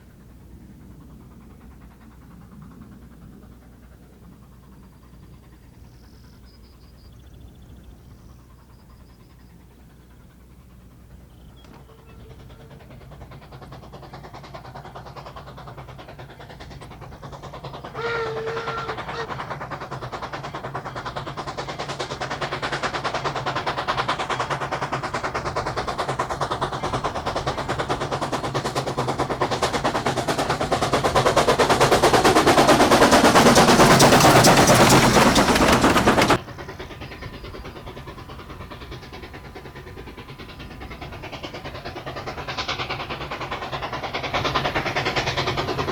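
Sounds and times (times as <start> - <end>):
steady train sound: 0.0 - 45.9
steam locomotive exhaust beats: 0.0 - 45.9.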